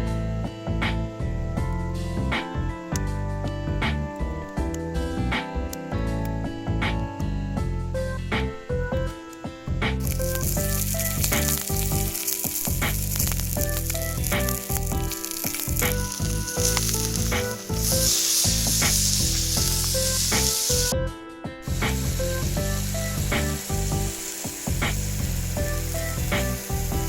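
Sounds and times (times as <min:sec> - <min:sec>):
background music: 0:00.0 - 0:27.0
food sizzling in a hot pan: 0:10.0 - 0:20.9, 0:21.6 - 0:27.0.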